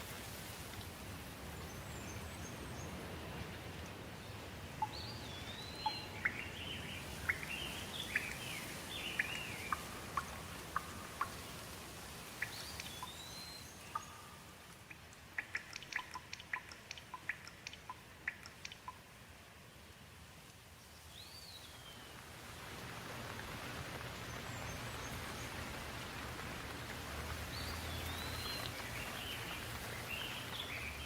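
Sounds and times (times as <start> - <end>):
steady rain: 0.0 - 31.0
sharp water drips: 2.8 - 19.4, 20.4 - 31.0
birds chirping and whistling: 12.4 - 14.3, 27.5 - 31.0.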